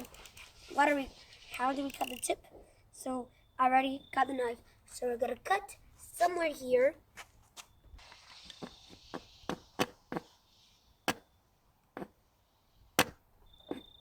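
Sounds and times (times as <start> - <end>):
soft hiss: 0.0 - 3.6, 5.8 - 13.0.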